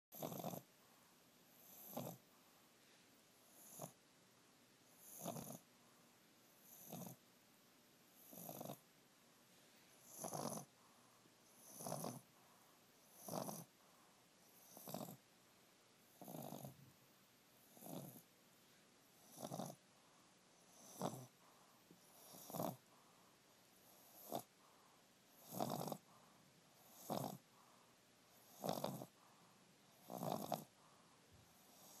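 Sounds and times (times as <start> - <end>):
dog snoring: 0.1 - 0.7, 1.5 - 2.3, 3.4 - 4.0, 4.8 - 5.7, 6.5 - 7.2, 8.2 - 8.8, 10.0 - 15.2, 16.1 - 16.9, 17.6 - 18.3, 19.2 - 19.8, 20.6 - 32.0.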